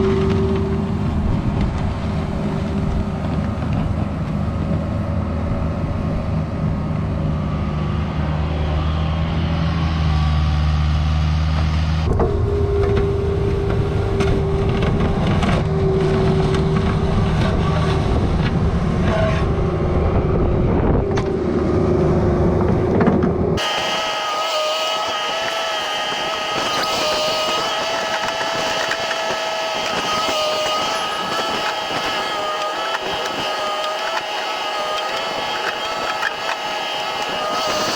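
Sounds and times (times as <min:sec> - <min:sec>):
excavator diesel engine running: 0:00.0 - 0:37.9
hydraulic whine: 0:00.0 - 0:37.9
higher wavering tones: 0:12.0 - 0:22.8.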